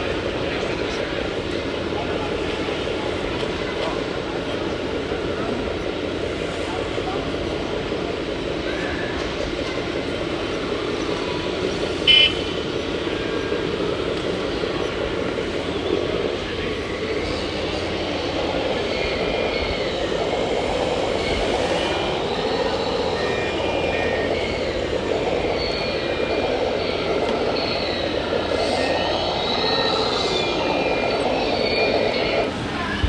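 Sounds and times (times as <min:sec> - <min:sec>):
steady mechanical hum: 0:00.0 - 0:33.0
model truck motors whining: 0:10.6 - 0:33.0.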